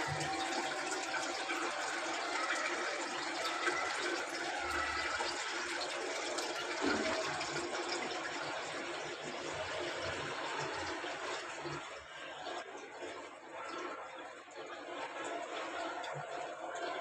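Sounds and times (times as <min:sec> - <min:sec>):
water rushing in washing machine: 0:00.0 - 0:12.6.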